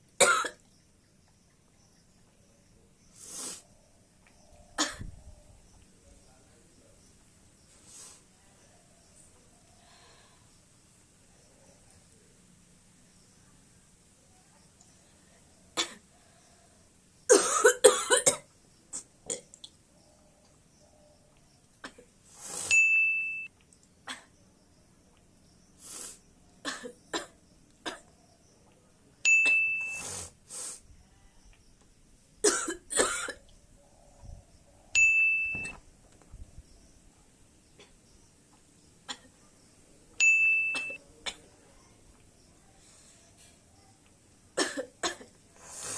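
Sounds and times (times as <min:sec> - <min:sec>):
high electronic ding: 0:29.3 - 0:30.0, 0:35.0 - 0:35.8, 0:40.2 - 0:41.0.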